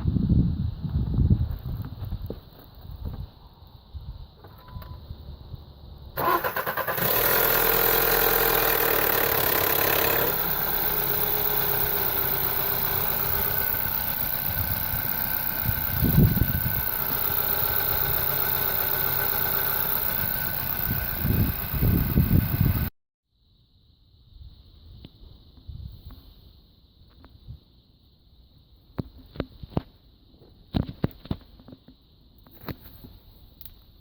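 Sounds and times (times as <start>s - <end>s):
car engine idling: 6.2s - 22.9s
engine starter cranking: 6.2s - 22.9s.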